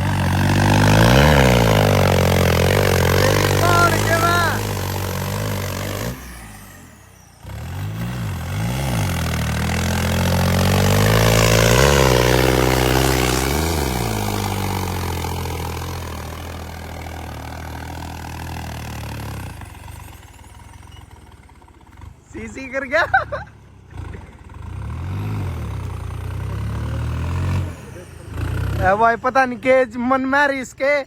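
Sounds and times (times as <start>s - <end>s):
tractor diesel engine revving: 0.0s - 31.0s.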